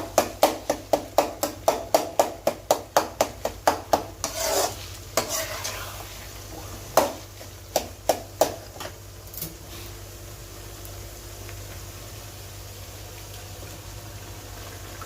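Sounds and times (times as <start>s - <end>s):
metal spatula tapping frying pan: 0.0s - 4.5s
scraping in frying pan: 3.9s - 7.6s.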